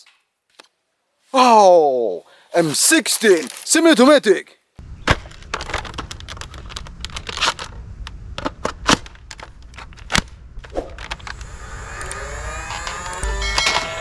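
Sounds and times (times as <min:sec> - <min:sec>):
music with rising tones: 0:11.4 - 0:14.0.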